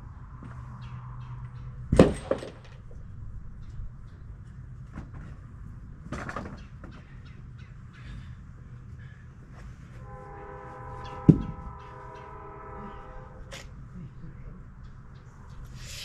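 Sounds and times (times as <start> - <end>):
steady low hum: 7.0 - 16.0.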